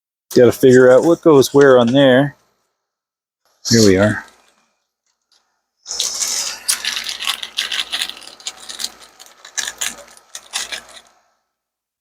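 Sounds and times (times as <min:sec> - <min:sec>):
small hard parts rattling: 0:05.3 - 0:11.2.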